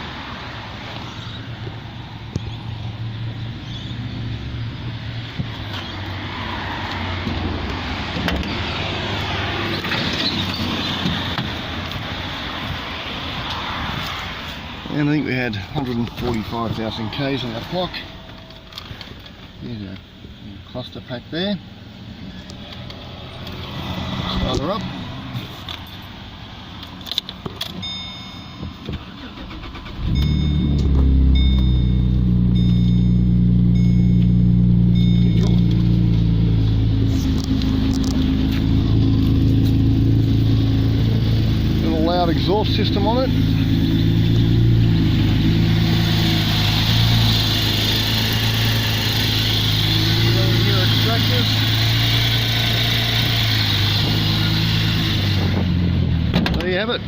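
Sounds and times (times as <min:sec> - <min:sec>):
passing traffic: 0:00.0 - 0:57.0
electronic beeping: 0:30.0 - 0:35.8
car engine idling with loud exhaust: 0:30.0 - 0:57.0.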